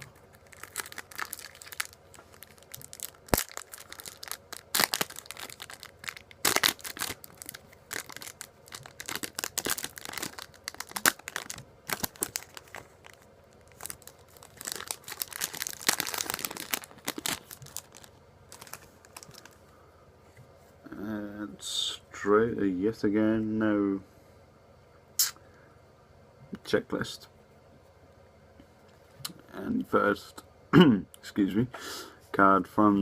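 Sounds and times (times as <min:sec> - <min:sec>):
foil pack tearing and crinkling: 0:00.0 - 0:19.6.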